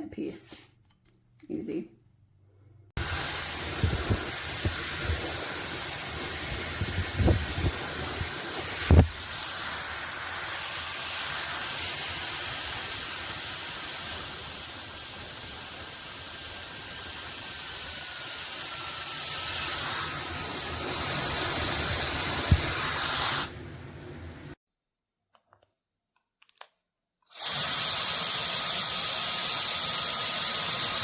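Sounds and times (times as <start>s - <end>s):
hair dryer blowing air: 3.0s - 23.6s, 27.4s - 31.0s.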